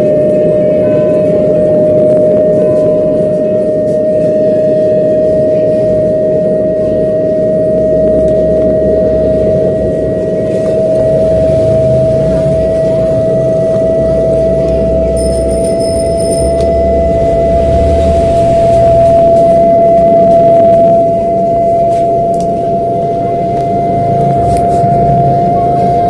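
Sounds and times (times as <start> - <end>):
rough hum: 5.4 - 26.0
speaker whistling tone: 5.5 - 26.0.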